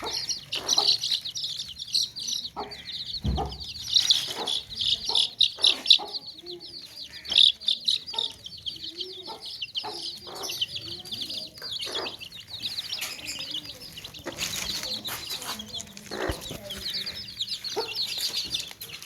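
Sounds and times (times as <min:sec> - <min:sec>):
baby chicks peeping: 0:00.0 - 0:19.0
knocks: 0:03.2 - 0:03.7.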